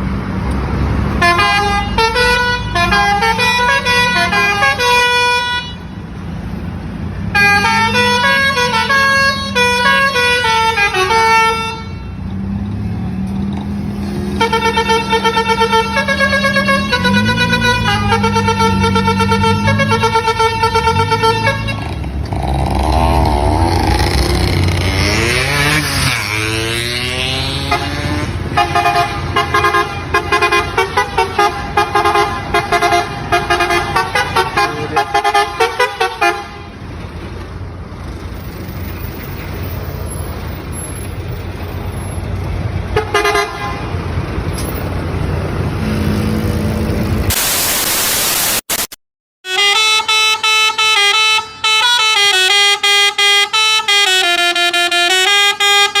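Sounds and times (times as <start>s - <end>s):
lorry engine and road noise: 0.0s - 56.0s
musical air horns tune: 1.2s - 5.8s, 7.4s - 12.2s, 14.3s - 22.0s, 25.0s - 36.7s, 43.0s - 43.8s, 49.4s - 56.0s
loud air hiss: 47.3s - 49.0s.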